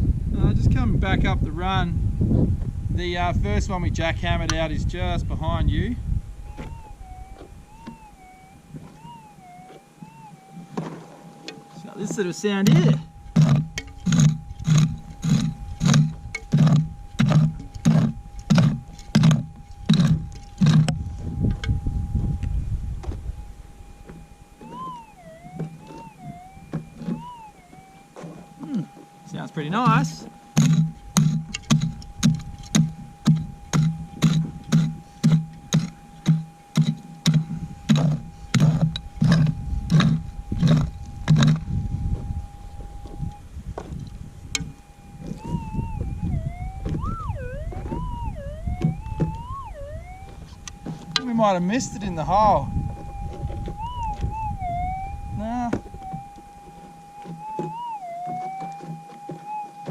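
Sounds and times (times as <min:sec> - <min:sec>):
metal detector signal bursts: 0:03.7 - 0:59.9
low rumble: 0:13.0 - 0:24.6.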